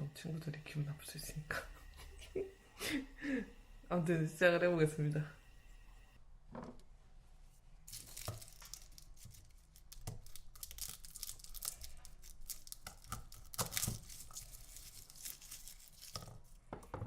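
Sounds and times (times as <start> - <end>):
crinkling and tearing rustles: 7.9 - 16.6.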